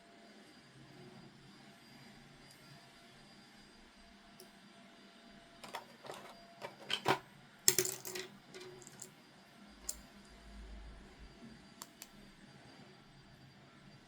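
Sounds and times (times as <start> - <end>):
plastic toy pieces clicking: 5.6 - 9.1.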